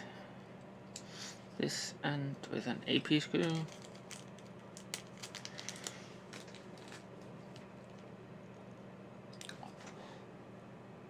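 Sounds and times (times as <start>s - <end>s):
faint steady hum: 0.0s - 11.0s
small plastic parts clicking: 3.3s - 8.1s.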